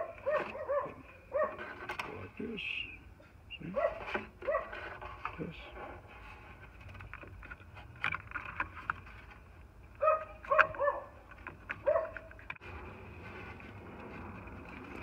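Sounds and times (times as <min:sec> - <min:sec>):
dog yelping: 0:00.0 - 0:01.6, 0:03.7 - 0:04.7, 0:10.0 - 0:11.2, 0:11.8 - 0:12.3
handling noise with clicks: 0:00.0 - 0:02.3, 0:03.8 - 0:15.0.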